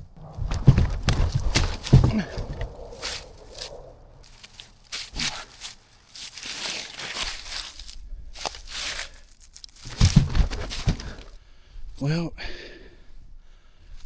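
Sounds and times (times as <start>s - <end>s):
dead branches crackling: 0.0s - 11.4s
axe chopping wood: 0.4s - 3.7s.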